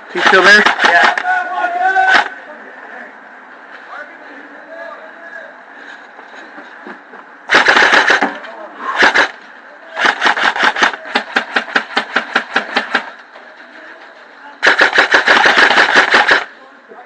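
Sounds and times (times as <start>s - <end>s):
airsoft gun firing: 0.2s - 1.2s, 7.5s - 8.4s, 9.0s - 9.4s, 10.0s - 13.2s, 14.6s - 16.5s.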